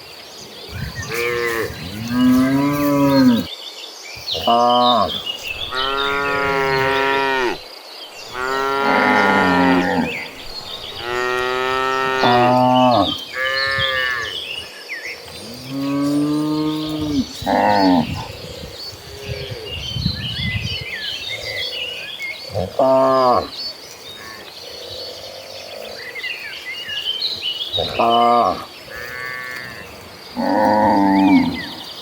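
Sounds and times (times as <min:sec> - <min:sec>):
cows mooing: 0:01.0 - 0:03.5, 0:04.4 - 0:07.6, 0:08.2 - 0:14.4, 0:15.4 - 0:18.2, 0:27.8 - 0:31.8.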